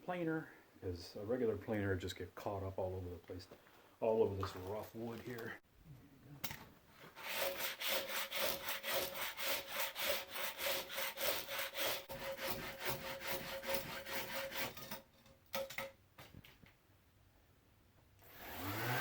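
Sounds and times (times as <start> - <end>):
rasp plane scraping wood: 7.2 - 15.0.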